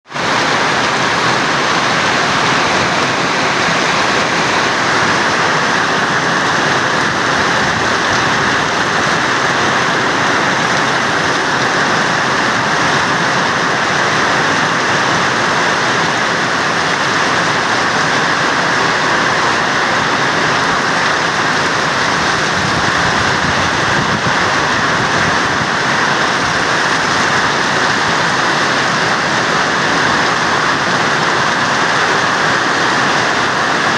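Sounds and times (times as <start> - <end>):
heavy rain pouring: 0.0 - 33.9.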